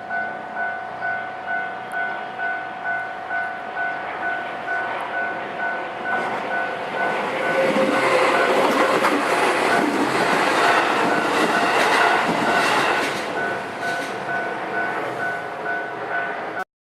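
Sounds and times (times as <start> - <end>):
crossing warning bell ringing: 0.0 - 16.6
train wheels clacking over rails: 4.1 - 16.2.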